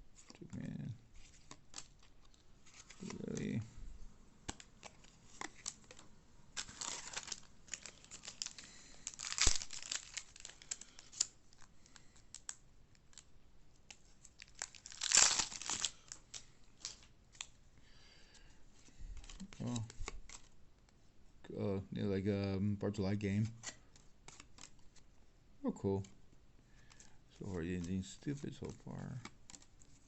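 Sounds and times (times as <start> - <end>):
cards clicking: 4.4 - 6.0
wrapper tearing and crinkling: 6.6 - 11.7, 14.2 - 17.4.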